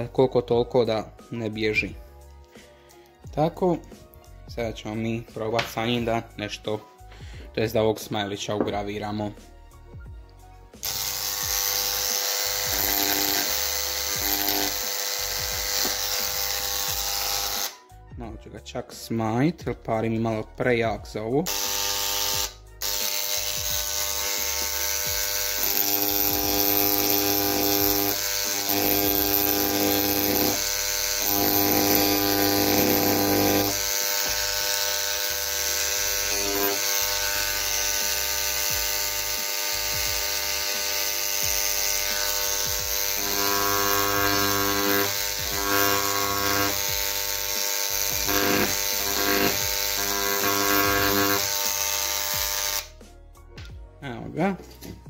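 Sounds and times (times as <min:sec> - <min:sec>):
electric engraving pen buzzing: 0:10.8 - 0:17.8, 0:21.5 - 0:53.0.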